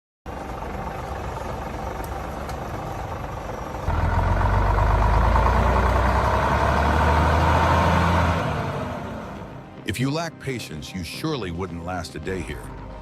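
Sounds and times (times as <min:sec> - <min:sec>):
heavy truck engine rumbling: 0:00.3 - 0:09.8.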